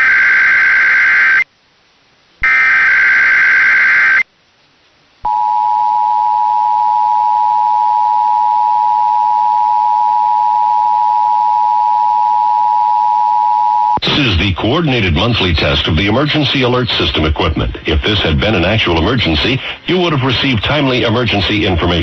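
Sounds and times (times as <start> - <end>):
loud steady two-tone signal: 0.0 - 1.5, 2.4 - 4.3, 5.2 - 14.4
harsh warbling data squawk: 2.4 - 4.3.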